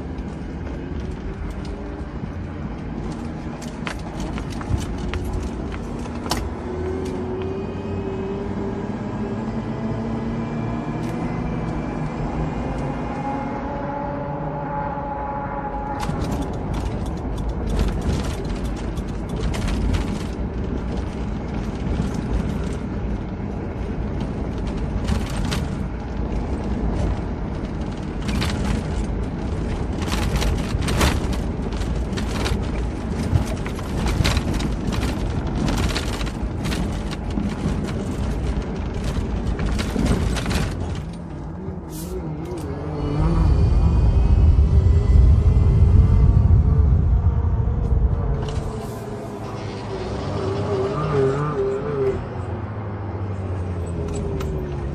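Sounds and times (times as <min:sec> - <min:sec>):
off-road vehicle engine rumble: 0:00.0 - 0:54.9
knocks and rattles: 0:16.0 - 0:41.6.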